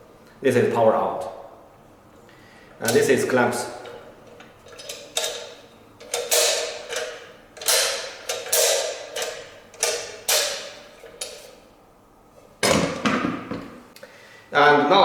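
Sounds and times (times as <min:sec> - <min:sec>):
metal clamps clicking: 0:02.8 - 0:11.7.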